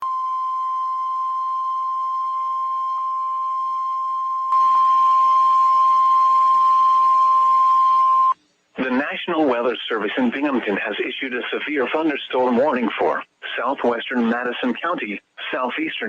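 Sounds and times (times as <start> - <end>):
steady alarm beep: 0.0 - 8.4.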